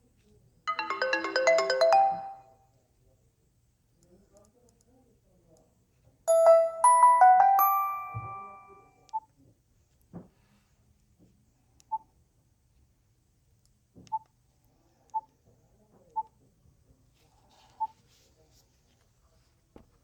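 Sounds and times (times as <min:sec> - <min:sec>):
phone beeping: 0:00.7 - 0:02.5, 0:06.3 - 0:08.9.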